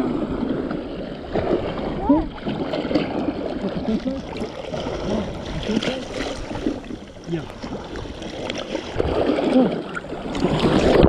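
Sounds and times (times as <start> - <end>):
seawater sloshing and splashing: 0.0 - 11.0.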